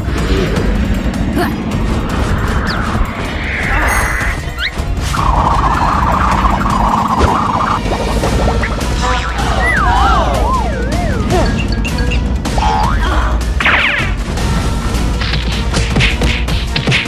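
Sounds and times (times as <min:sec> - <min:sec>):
cartoon background music: 0:00.0 - 0:17.0
noisy rush: 0:00.0 - 0:17.0
rising whistles: 0:02.6 - 0:12.2.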